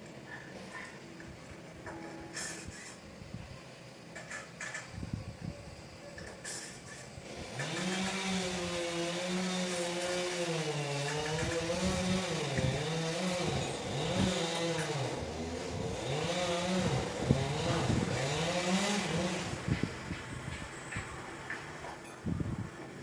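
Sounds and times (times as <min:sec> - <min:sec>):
chainsaw engine running: 0:06.9 - 0:20.2.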